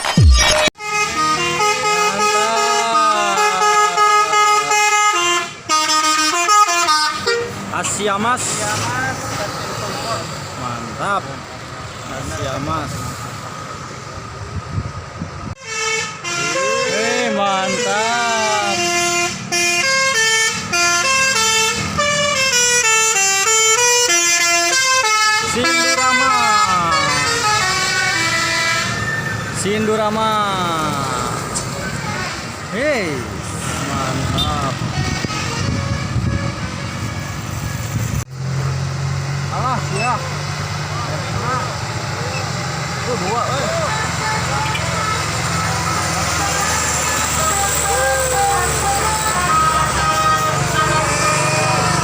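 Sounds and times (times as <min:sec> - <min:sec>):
electronic music with kick drum: 0:00.0 - 0:00.7
bus horn playing melody: 0:00.2 - 0:07.6, 0:15.6 - 0:29.0, 0:34.3 - 0:38.1, 0:43.9 - 0:52.0.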